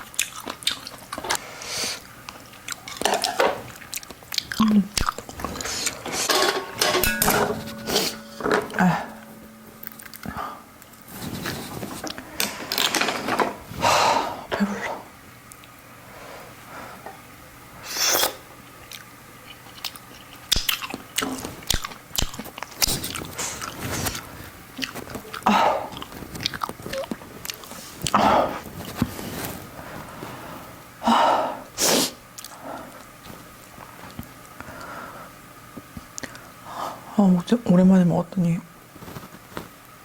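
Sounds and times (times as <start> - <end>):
chewing and mouth smacks: 0.0 - 1.4, 2.3 - 6.0, 18.9 - 28.2.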